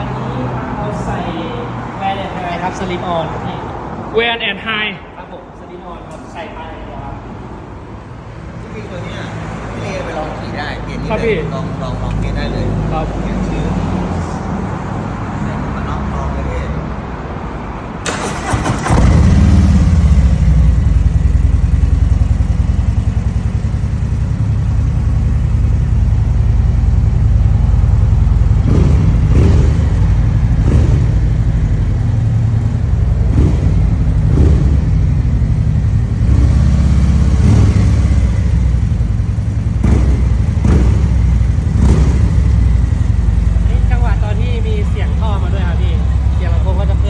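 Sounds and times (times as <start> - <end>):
motorcycle engine idling: 18.1 - 47.0
motorcycle engine revving: 18.1 - 47.0.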